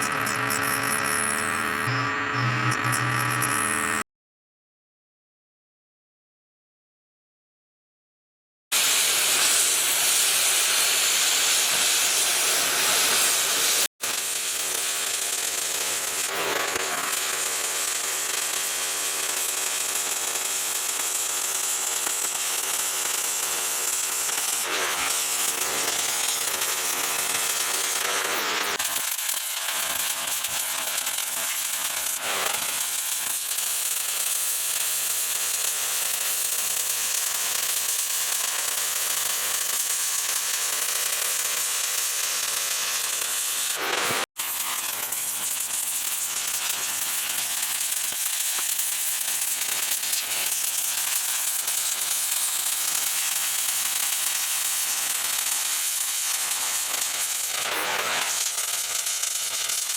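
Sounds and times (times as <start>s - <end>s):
faint hum: 0.0s - 4.0s.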